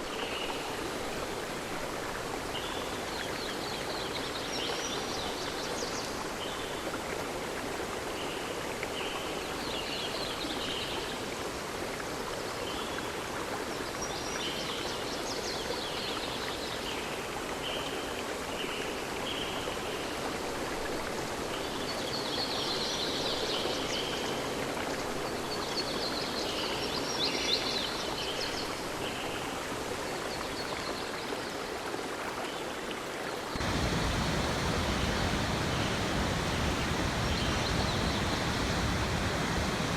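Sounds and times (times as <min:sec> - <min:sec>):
river water rushing: 0:33.3 - 0:39.9
small birds chirping: 0:33.6 - 0:39.9.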